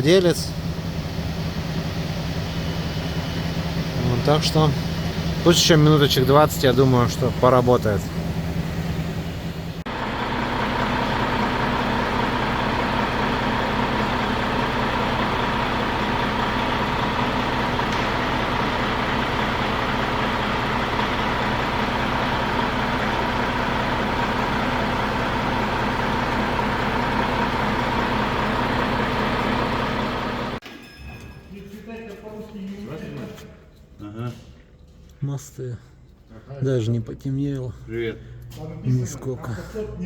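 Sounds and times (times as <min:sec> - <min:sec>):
diesel truck engine idling: 0:00.0 - 0:30.6.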